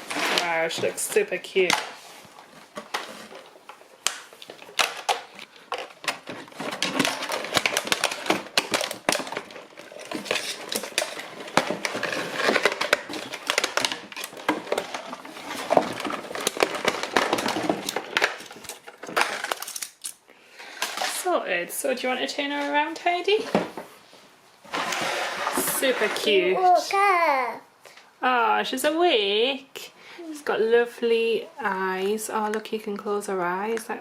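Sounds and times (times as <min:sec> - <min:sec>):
packaging clicks crinkles and rustles: 0:00.0 - 0:21.2.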